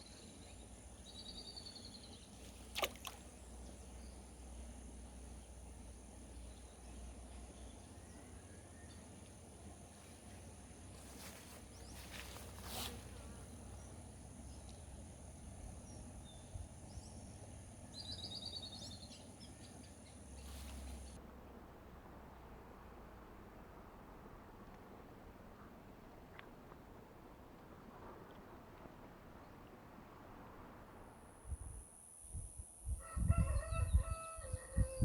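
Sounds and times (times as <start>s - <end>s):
high insect drone: 30.8s - 33.2s.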